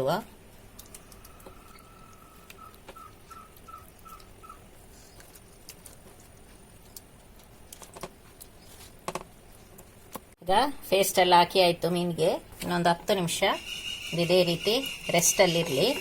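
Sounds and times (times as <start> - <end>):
bird chirping: 1.0 - 5.2, 13.4 - 16.0.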